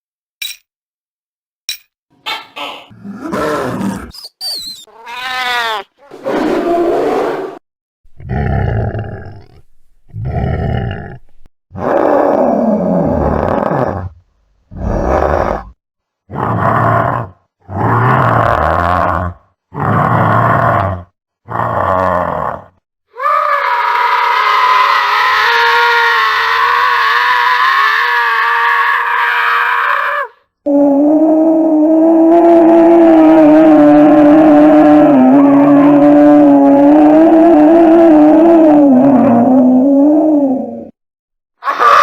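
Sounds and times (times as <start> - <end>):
gorilla roaring: 2.5 - 4.2, 8.2 - 41.0, 41.6 - 42.0
long high-pitched cry: 23.1 - 39.8, 41.6 - 42.0.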